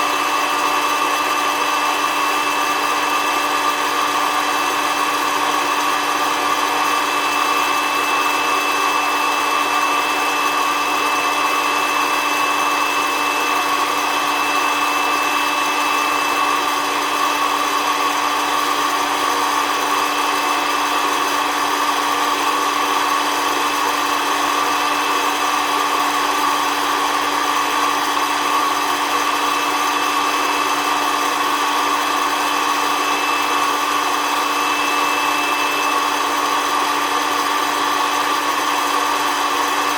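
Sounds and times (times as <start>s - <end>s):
coffee roaster fan blowing: 29.0s - 37.8s.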